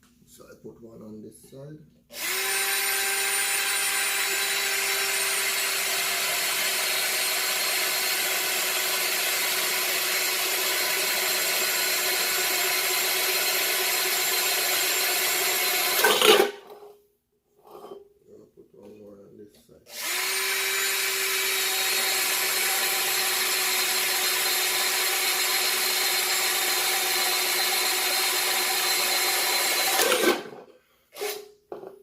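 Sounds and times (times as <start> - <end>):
electric drill boring: 2.1 - 16.6, 19.9 - 30.6, 31.2 - 31.5.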